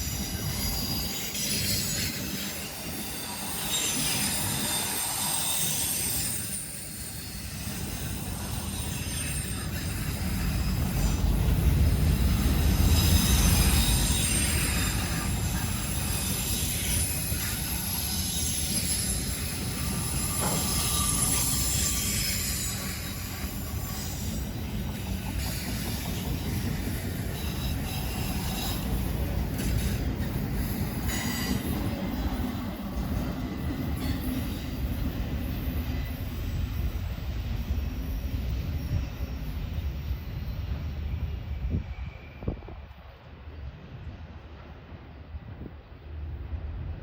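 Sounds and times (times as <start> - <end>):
train cars rumbling on rails: 0.0 - 47.0
wheel squeal: 12.9 - 29.0, 30.6 - 31.8.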